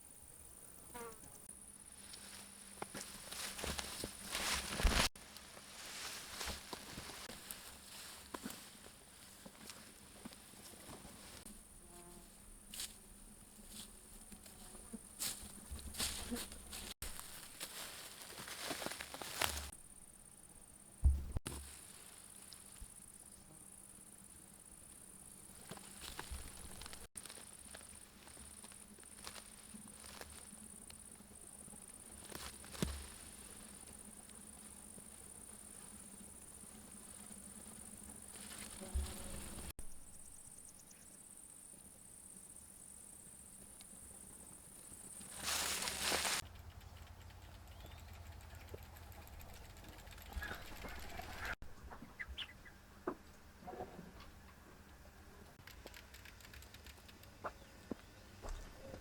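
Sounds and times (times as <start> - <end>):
insects chirring: 0.0 - 51.6, 55.6 - 58.7
low thumps: 21.0 - 21.4.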